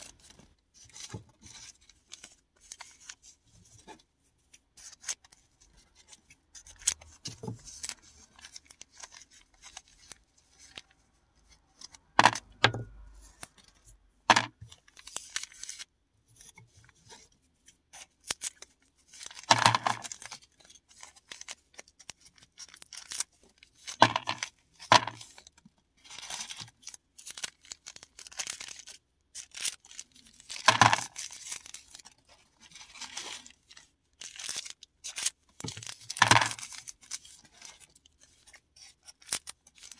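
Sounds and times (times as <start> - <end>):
plastic packaging tearing and crinkling: 26.1 - 38.0.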